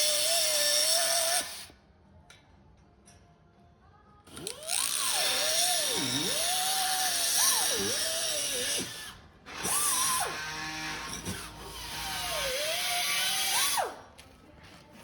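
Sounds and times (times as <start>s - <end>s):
power tool motor whining on metal: 4.3s - 14.1s.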